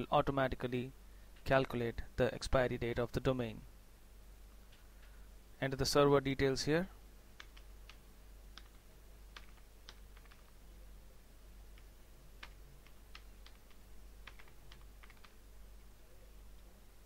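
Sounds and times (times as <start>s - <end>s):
low steady hum: 0.0s - 17.0s
faint keyboard typing: 7.4s - 10.7s, 11.6s - 15.9s.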